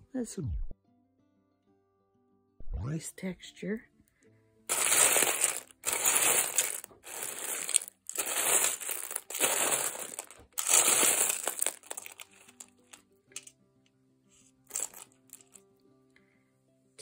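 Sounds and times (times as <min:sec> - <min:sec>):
buttons clattering: 0:04.7 - 0:12.7, 0:14.7 - 0:15.6.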